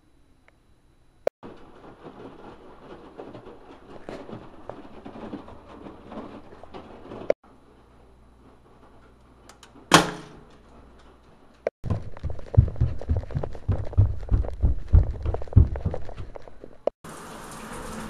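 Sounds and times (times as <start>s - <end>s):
low thuds and taps: 11.8s - 16.9s.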